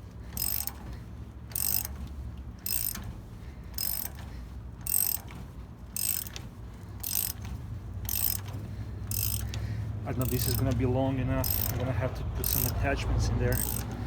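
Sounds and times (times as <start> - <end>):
ratcheting wrench clicking: 0.3 - 2.0, 2.6 - 3.1, 3.7 - 14.0.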